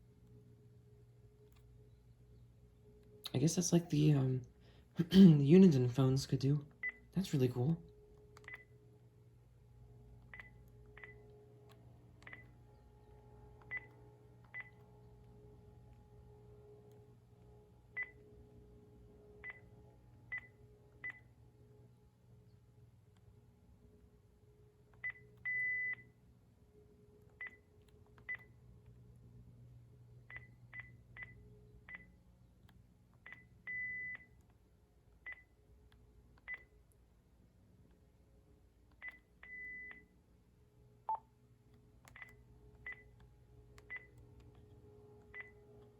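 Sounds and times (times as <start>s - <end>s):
phone key beeps: 8.4s - 8.7s, 10.3s - 11.3s, 12.2s - 12.5s, 39.0s - 40.1s.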